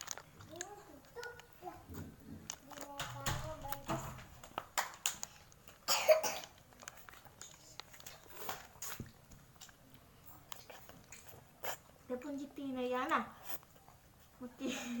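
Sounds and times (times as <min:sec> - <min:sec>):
wet mouth sounds and crunches: 0:00.0 - 0:01.6, 0:04.4 - 0:12.0
person coughing: 0:05.9 - 0:06.5.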